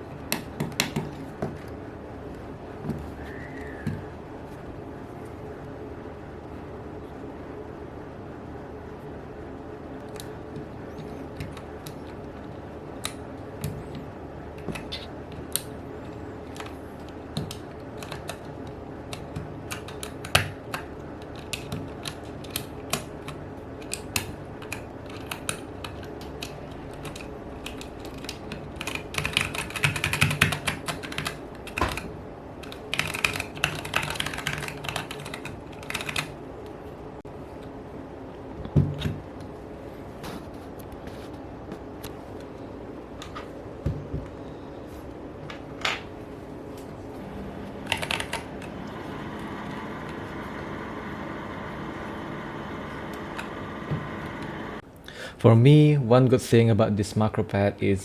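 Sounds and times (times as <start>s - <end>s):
mechanical keyboard typing: 14.6s - 36.4s, 47.3s - 54.7s.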